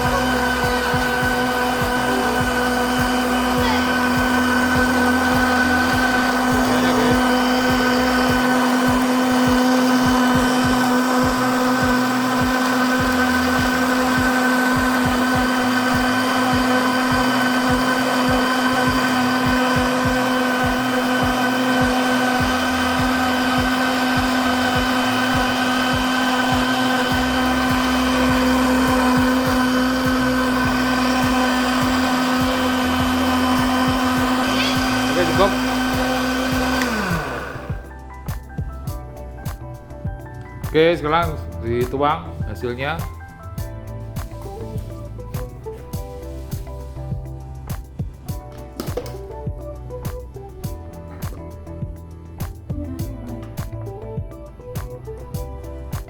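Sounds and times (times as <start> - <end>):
blender motor whine: 0.0 - 39.1.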